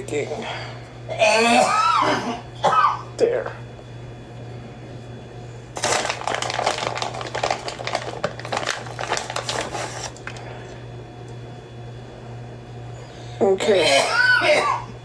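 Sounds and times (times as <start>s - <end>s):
plastic bag crinkling: 5.8s - 10.8s.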